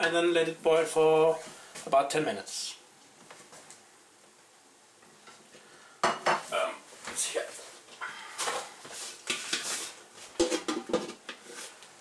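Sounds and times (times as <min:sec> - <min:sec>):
metal cookware clattering: 0:10.4 - 0:11.2.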